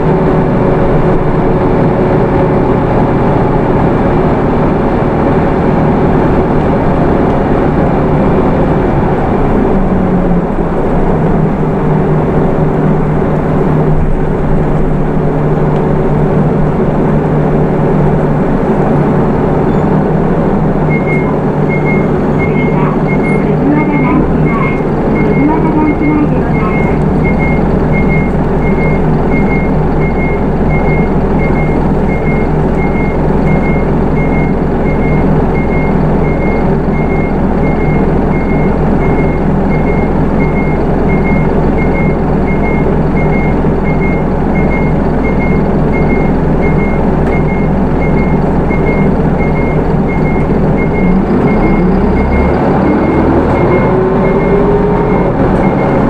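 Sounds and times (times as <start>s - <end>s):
bus diesel engine running: 0.0s - 56.0s
high electronic beep: 20.9s - 56.0s.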